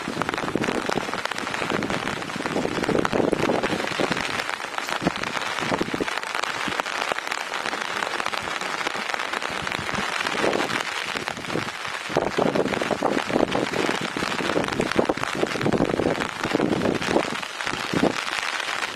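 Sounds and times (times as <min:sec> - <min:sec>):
rain falling: 0:00.0 - 0:18.9.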